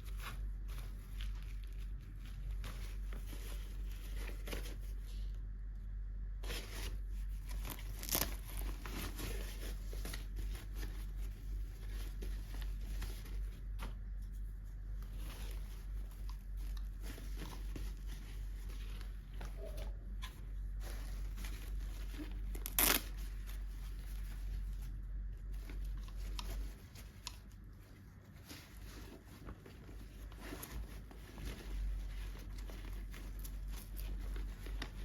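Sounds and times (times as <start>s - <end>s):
packaging crinkling and tearing: 7.5s - 10.9s, 21.6s - 23.5s.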